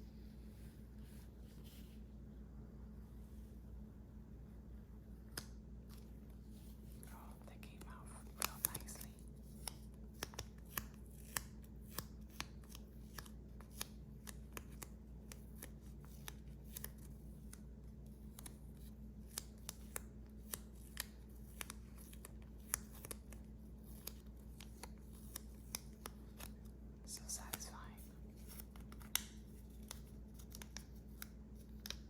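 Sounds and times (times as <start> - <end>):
faint low hum: 0.0 - 32.0
hands clicking and tapping puzzle pieces: 7.0 - 32.0.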